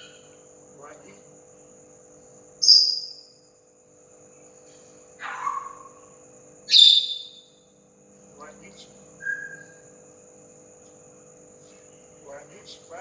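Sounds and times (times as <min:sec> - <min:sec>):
parrot calls: 0:05.2 - 0:06.1, 0:06.7 - 0:07.4, 0:09.2 - 0:09.8.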